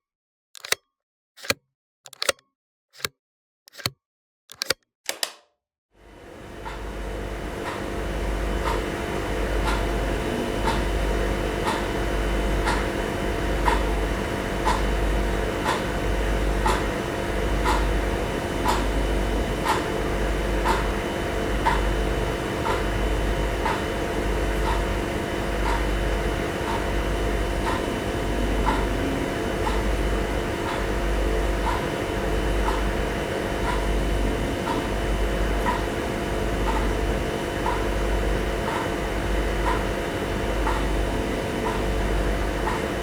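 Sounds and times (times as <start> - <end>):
steady machine hum: 6.0 - 43.0.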